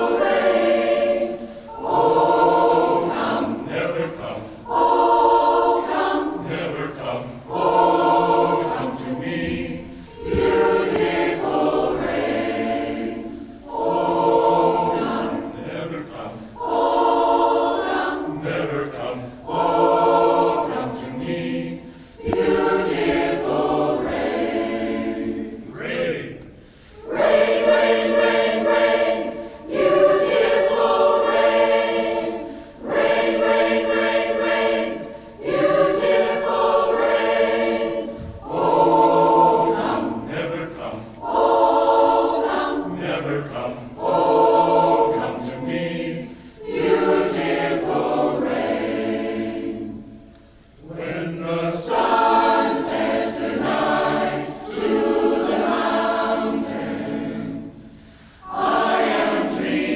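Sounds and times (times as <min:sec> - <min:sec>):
choir singing in harmony: 0:00.0 - 0:59.9.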